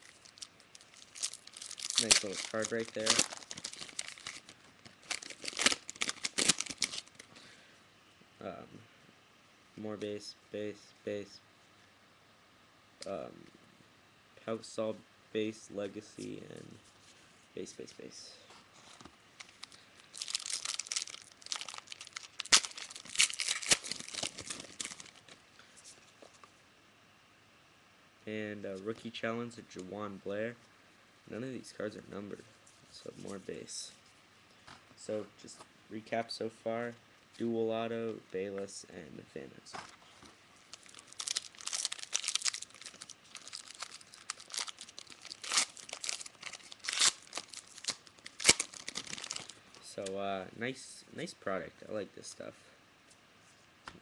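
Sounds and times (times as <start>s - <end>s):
foil wrapper tearing and crinkling: 0.0s - 7.2s, 19.4s - 25.2s, 40.7s - 49.6s
cards being handled: 0.0s - 7.3s, 18.9s - 26.5s.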